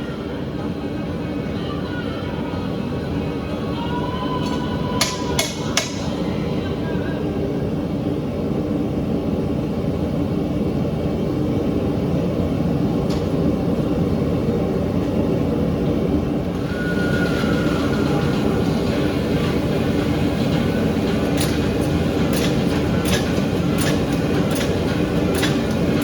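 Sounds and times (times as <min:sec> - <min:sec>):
forge burner roaring: 0:07.4 - 0:26.0.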